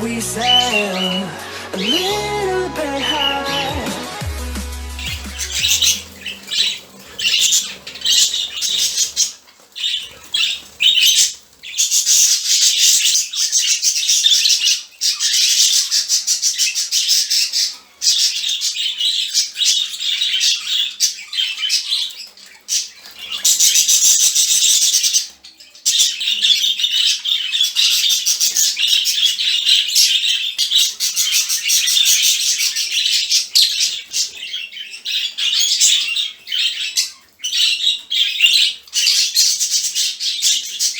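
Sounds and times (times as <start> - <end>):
budgerigars chattering: 5.0 - 40.9.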